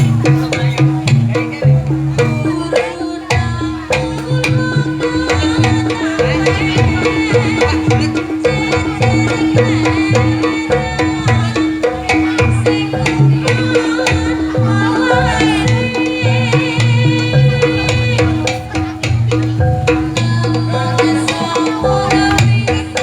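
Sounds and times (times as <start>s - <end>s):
hand drums beating: 0.0s - 23.0s.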